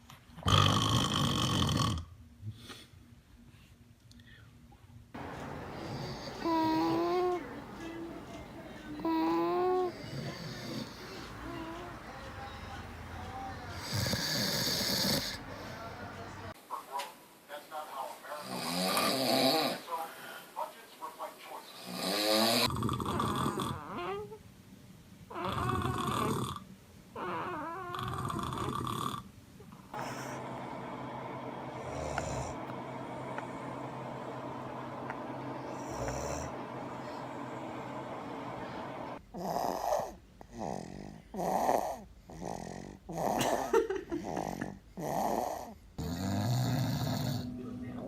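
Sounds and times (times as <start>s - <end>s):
man snoring: 0.4s - 2.1s, 5.2s - 7.7s, 8.8s - 12.0s, 13.7s - 16.0s, 18.5s - 19.8s, 21.8s - 24.2s, 25.3s - 26.6s, 27.2s - 29.2s, 30.0s - 30.6s, 31.6s - 43.5s, 44.2s - 47.6s
quiet breaths: 2.4s - 16.6s, 19.7s - 24.4s.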